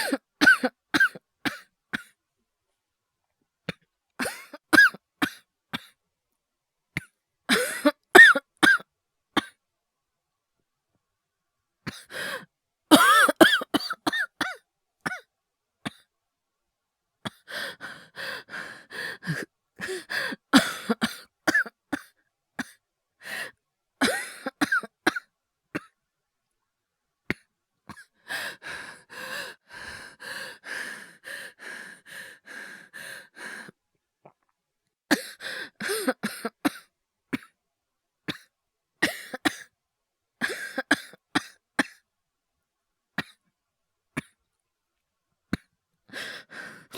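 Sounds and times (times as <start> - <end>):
person coughing harshly: 0.0 - 2.1, 4.2 - 5.9, 7.5 - 8.8, 12.9 - 15.2, 19.3 - 22.8, 24.0 - 25.9, 35.1 - 37.5, 38.3 - 39.7, 40.4 - 42.0.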